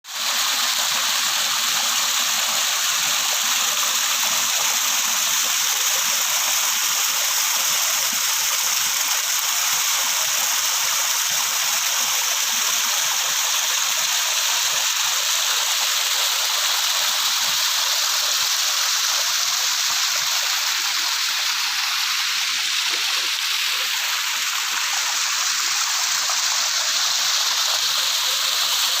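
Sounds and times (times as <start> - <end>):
stream rushing: 12.1 - 29.0.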